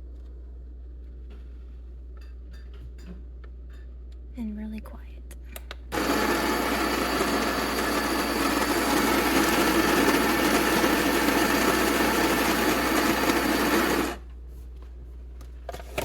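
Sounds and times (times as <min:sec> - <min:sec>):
coffee grinder grinding beans: 0:05.9 - 0:14.2.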